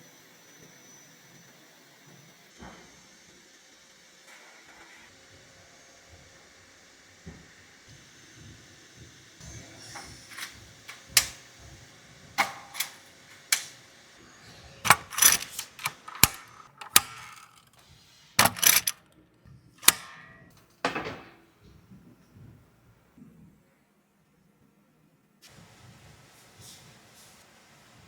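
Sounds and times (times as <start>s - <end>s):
metal tools clicking and clanking: 10.2s - 11.4s, 12.4s - 13.7s, 14.9s - 17.8s, 18.4s - 19.0s, 19.8s - 20.5s.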